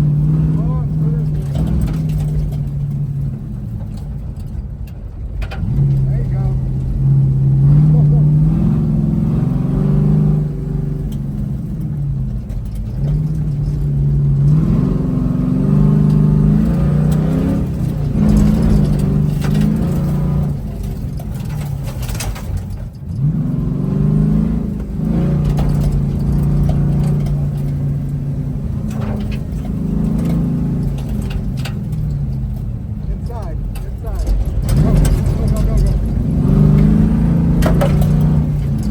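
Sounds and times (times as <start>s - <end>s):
truck engine revving: 0.0s - 38.9s
rough rushing noise with clicks: 10.3s - 23.4s, 24.6s - 38.9s.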